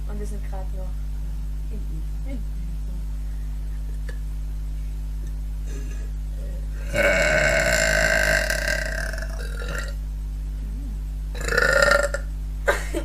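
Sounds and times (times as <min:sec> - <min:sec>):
woman belching: 0:05.7 - 0:10.0, 0:11.4 - 0:12.3.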